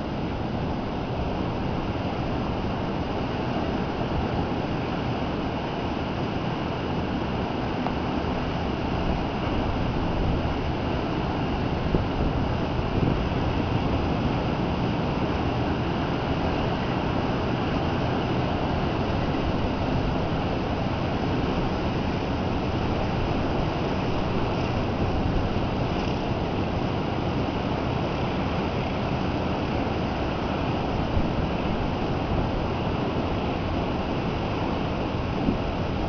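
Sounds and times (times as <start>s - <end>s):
wind buffeting microphone: 8.3s - 36.0s.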